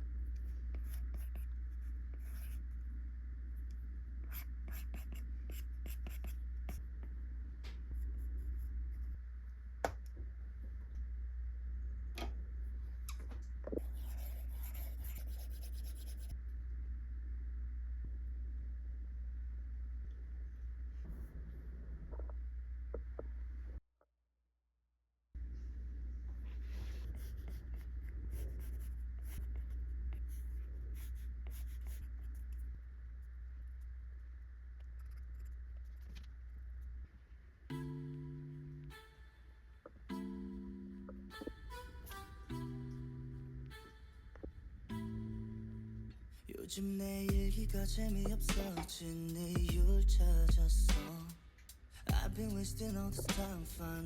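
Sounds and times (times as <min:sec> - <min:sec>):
low hum: 0:00.0 - 0:23.8, 0:25.4 - 0:38.9, 0:39.8 - 0:46.5, 0:47.1 - 0:54.0
stylus scratching on tablet: 0:04.3 - 0:06.8, 0:13.7 - 0:16.4, 0:26.5 - 0:32.8.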